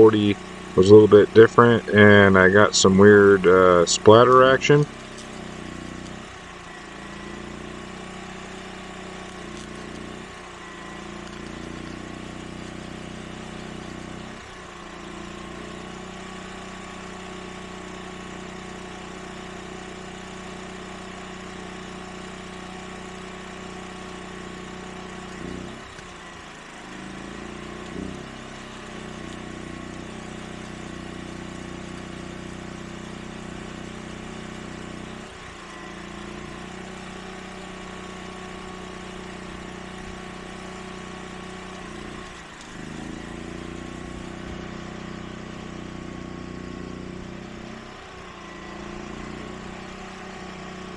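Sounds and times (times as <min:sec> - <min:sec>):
generator engine running: 0:00.0 - 0:50.9.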